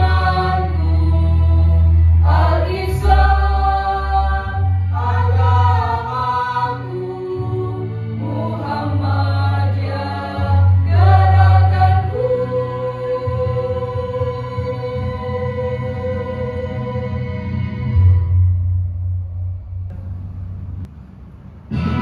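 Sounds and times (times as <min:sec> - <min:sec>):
children's choir singing: 0:00.0 - 0:17.4
instrumental accompaniment with bass: 0:00.0 - 0:22.0.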